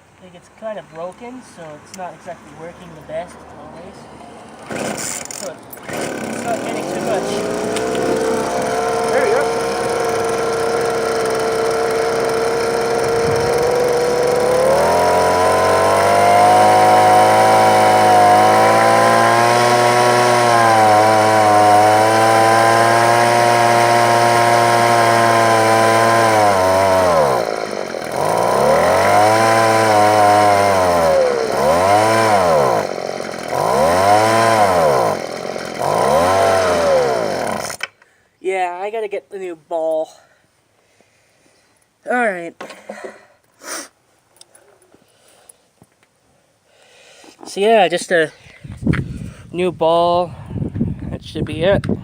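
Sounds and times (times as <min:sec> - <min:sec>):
weedeater engine revving: 0:04.6 - 0:37.9.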